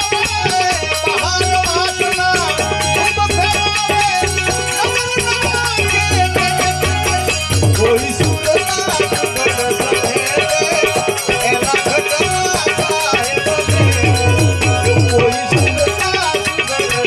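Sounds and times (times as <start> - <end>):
fast percussion rhythm: 0.0 - 17.0.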